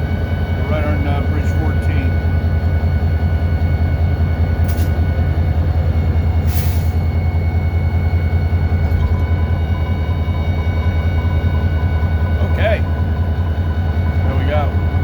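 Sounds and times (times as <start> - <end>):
diesel locomotive engine drone: 0.0 - 15.0
brief air hisses: 6.5 - 7.0.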